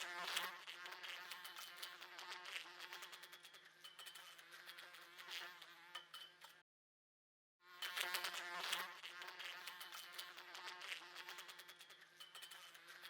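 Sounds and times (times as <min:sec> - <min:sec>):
fly tapping against window glass: 0:00.0 - 0:06.6, 0:07.8 - 0:13.0
housefly buzzing: 0:00.0 - 0:06.6, 0:07.7 - 0:13.0.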